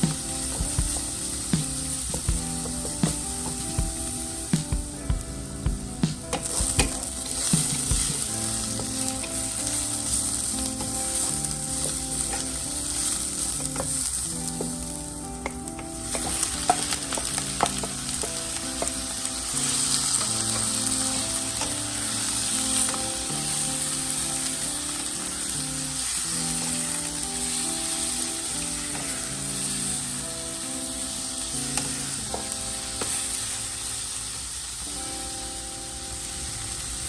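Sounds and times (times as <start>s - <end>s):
food sizzling in a pan: 0.0s - 37.0s
utensil clacking on pan: 6.3s - 8.2s, 13.5s - 14.8s, 15.4s - 19.0s.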